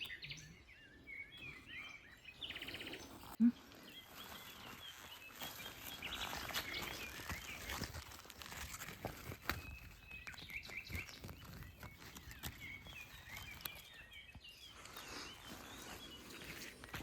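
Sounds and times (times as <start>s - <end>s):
songbirds chirping: 0.0s - 17.0s
footsteps on forest floor: 3.6s - 17.0s.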